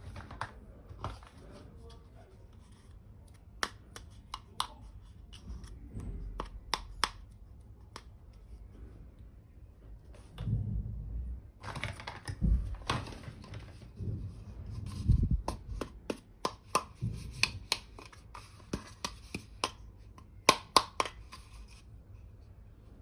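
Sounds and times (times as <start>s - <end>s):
plastic toy pieces rustling: 11.6s - 13.9s.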